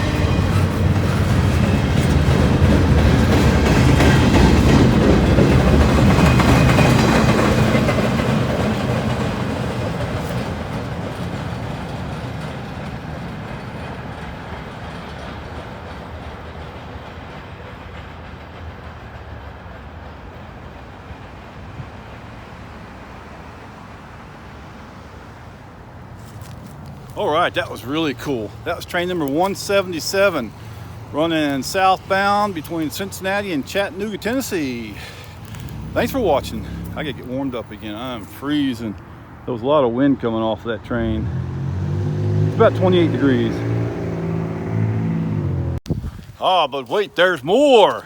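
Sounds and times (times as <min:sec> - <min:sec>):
freight train rolling past: 0:00.0 - 0:45.8.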